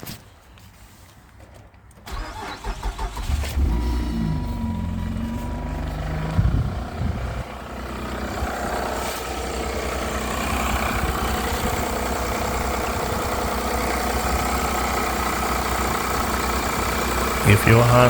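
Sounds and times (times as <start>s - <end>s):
car engine starting: 2.1s - 18.0s
engine running with rattling knock: 3.2s - 17.6s.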